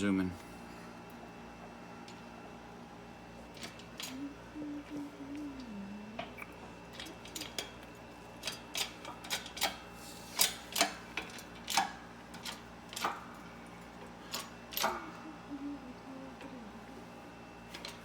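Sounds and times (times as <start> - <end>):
small parts and tools clicking: 3.6 - 4.2, 6.9 - 7.8, 8.4 - 9.8, 10.4 - 13.3, 14.2 - 15.0.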